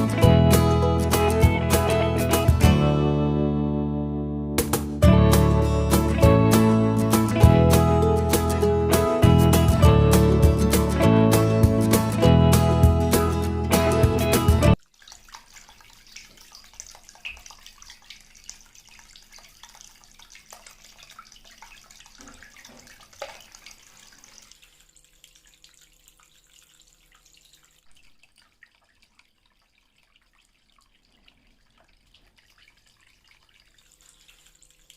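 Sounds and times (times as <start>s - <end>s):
fountain water trickling and dripping: 14.7s - 34.9s.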